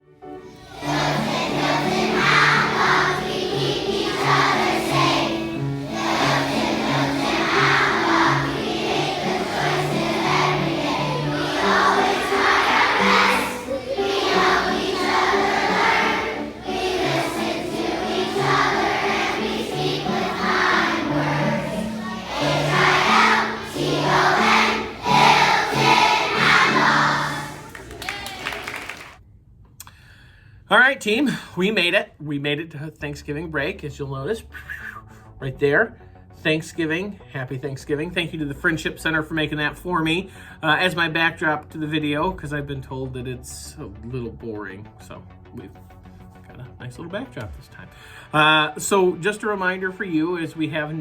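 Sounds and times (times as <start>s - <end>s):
group of voices singing: 0.5s - 28.0s.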